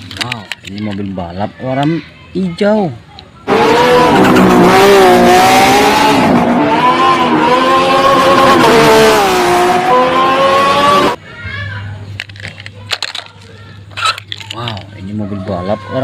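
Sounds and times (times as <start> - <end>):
race car engine revving: 3.4 - 11.2.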